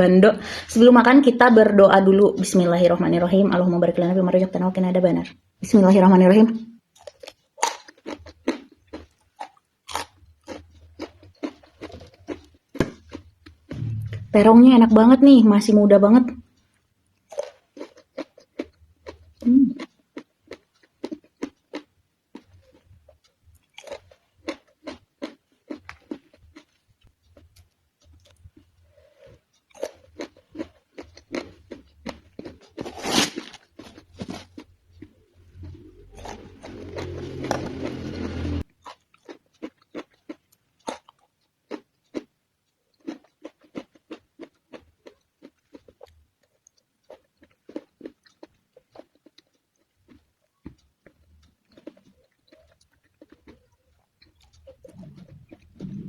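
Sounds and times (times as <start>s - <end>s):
crunching raw vegetables: 6.9s - 13.9s, 16.5s - 56.0s
loud rough noise: 13.7s - 15.0s, 35.5s - 38.6s.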